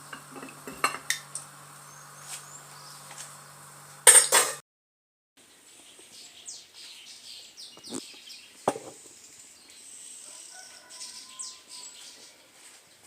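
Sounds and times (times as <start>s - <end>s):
birds chirping: 1.8s - 3.1s, 5.4s - 13.0s.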